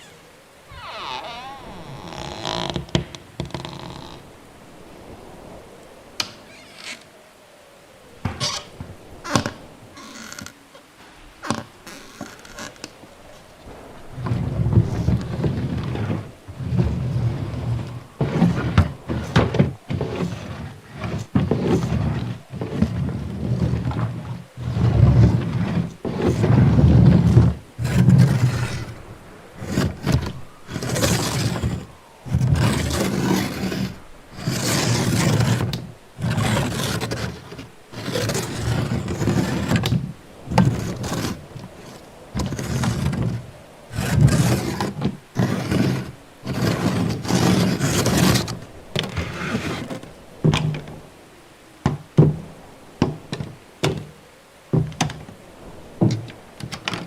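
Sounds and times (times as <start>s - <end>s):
doors scraping: 0.0s - 4.3s, 14.2s - 23.0s.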